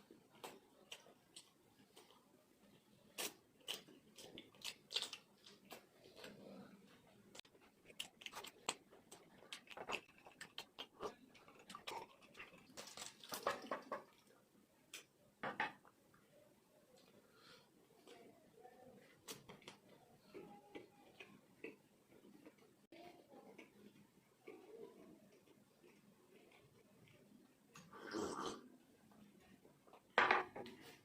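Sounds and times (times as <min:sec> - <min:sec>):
person chewing: 0:00.3 - 0:02.3, 0:03.0 - 0:06.7, 0:07.4 - 0:13.6, 0:23.6 - 0:28.7.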